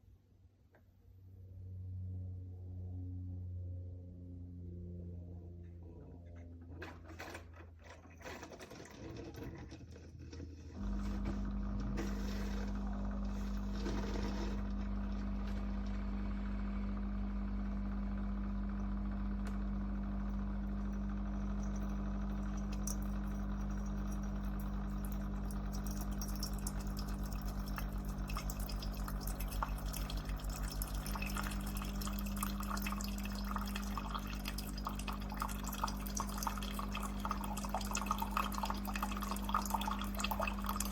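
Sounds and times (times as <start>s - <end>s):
coffee maker pump hum: 5.8s - 40.9s
coffee dripping into cup: 20.3s - 40.9s.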